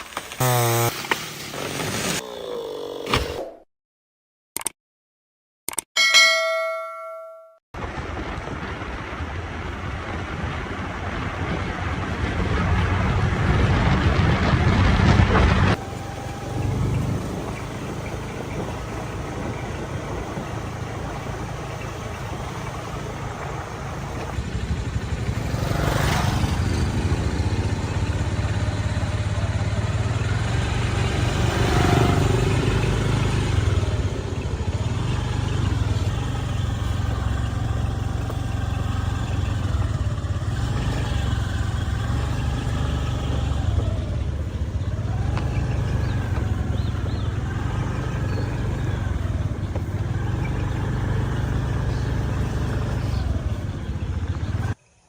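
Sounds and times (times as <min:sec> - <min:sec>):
chainsaw engine running: 0:00.2 - 0:02.2, 0:15.6 - 0:54.8.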